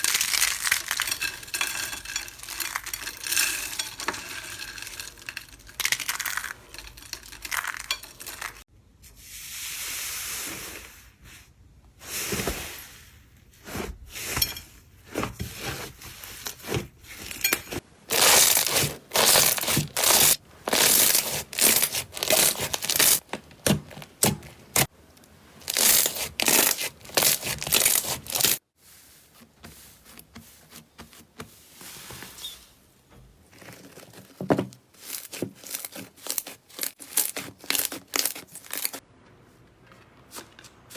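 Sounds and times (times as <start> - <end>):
slime squishing by hand: 15.0 - 28.6, 33.3 - 40.9.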